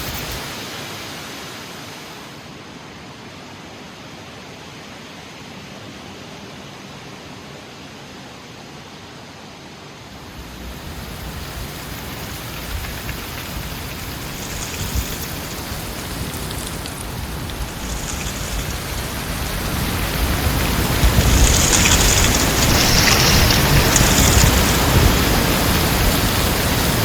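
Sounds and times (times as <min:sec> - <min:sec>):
rushing wind storm: 0:10.1 - 0:27.0.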